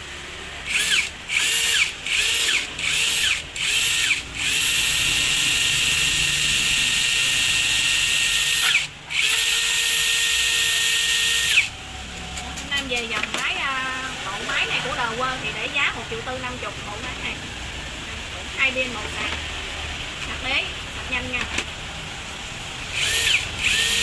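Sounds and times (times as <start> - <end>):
cordless drill whining: 0.6 - 11.8, 22.9 - 24.0.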